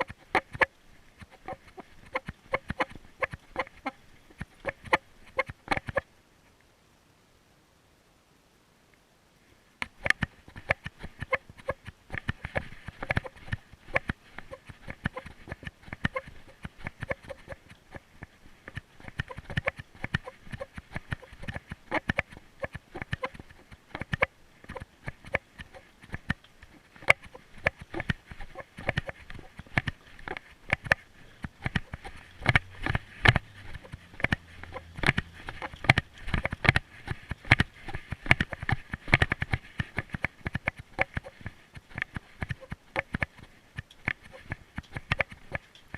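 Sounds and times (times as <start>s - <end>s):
rapid popping clicks: 0.0s - 6.0s, 9.8s - 45.9s.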